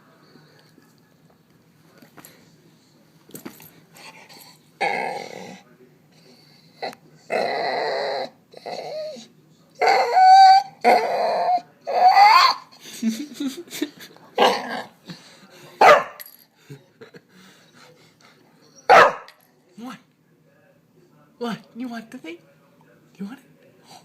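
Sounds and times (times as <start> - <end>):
dog growling and whining: 4.4 - 5.6, 6.2 - 12.8, 14.4 - 15.0.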